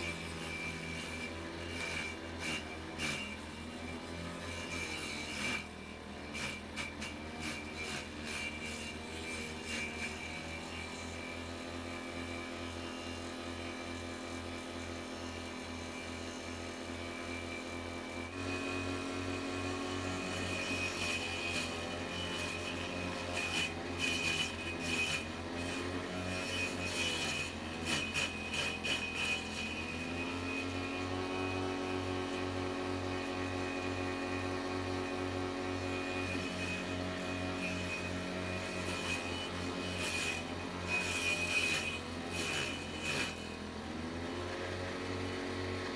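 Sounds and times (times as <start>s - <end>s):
vegetable chopper motor hum: 18.3s - 45.9s.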